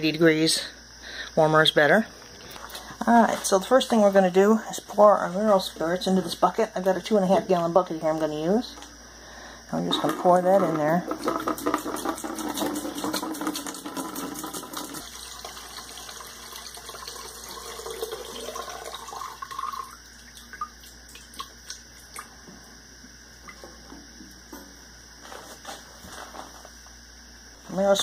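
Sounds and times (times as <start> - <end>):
liquid pouring into bucket: 10.0 - 22.3.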